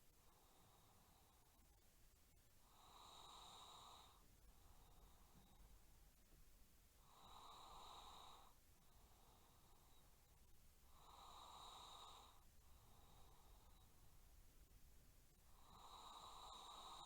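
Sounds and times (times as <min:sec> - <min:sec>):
quiet breathing: 0:00.0 - 0:17.0
person snoring: 0:15.6 - 0:17.0.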